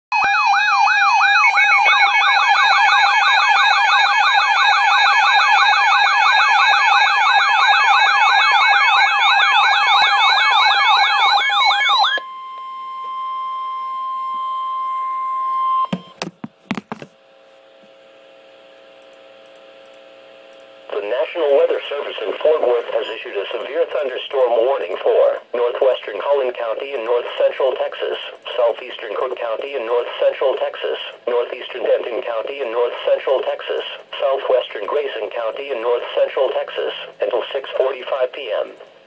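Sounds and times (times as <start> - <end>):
electronic warbling alarm: 0.1 - 16.2
steady single warning tone: 12.1 - 16.2.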